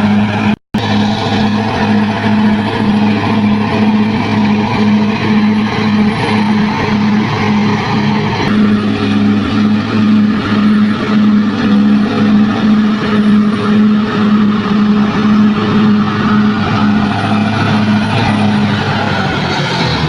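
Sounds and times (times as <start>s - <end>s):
bulldozer diesel engine: 0.0s - 20.0s.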